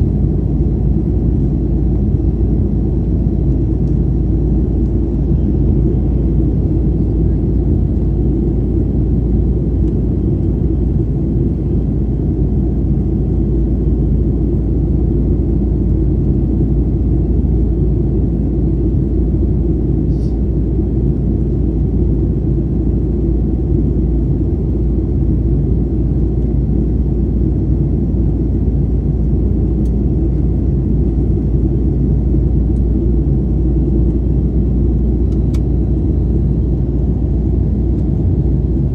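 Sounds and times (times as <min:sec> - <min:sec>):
airliner cabin engine rumble: 0:00.0 - 0:38.9
faint tick: 0:35.3 - 0:35.6.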